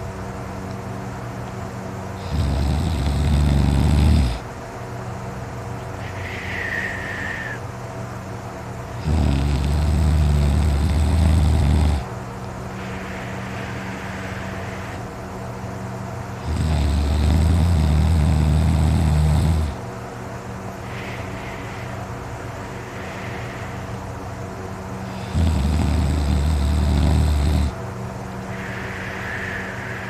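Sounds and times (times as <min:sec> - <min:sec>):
steady low hum: 0:00.0 - 0:30.0
man snoring loudly: 0:02.2 - 0:04.4, 0:08.9 - 0:12.1, 0:16.4 - 0:19.8, 0:25.0 - 0:27.8.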